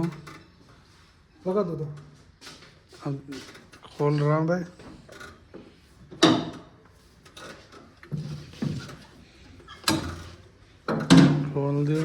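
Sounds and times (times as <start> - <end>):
sharp metal knocks and clunks: 6.1 - 6.7, 10.9 - 11.6.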